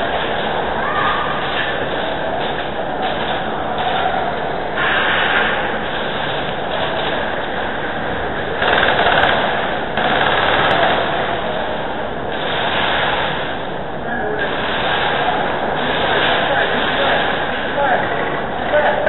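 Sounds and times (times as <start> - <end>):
airsoft guns full-auto bursts: 8.5 - 11.7, 12.3 - 13.5, 14.5 - 17.7.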